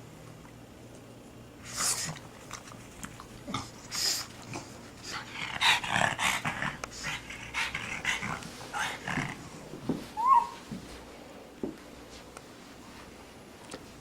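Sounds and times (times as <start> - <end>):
pug making noisy sounds: 3.5 - 10.6.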